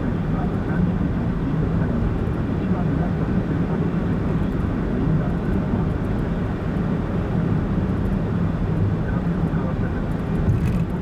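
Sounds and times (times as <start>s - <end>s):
car cruising road noise: 9.7s - 11.0s.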